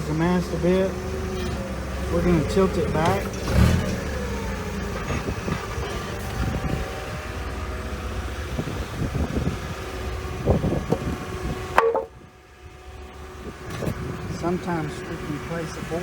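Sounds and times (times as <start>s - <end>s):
hydraulic mast raising: 0.0s - 12.3s
forklift engine running: 0.0s - 16.0s.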